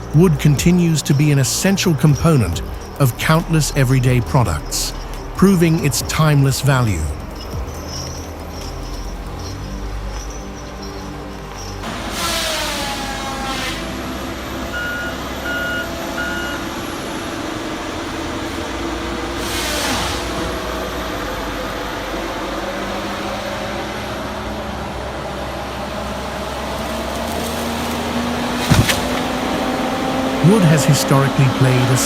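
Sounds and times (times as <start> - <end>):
heavy machine engine running: 0.0 - 32.0
backup alarm beeping: 14.7 - 16.8.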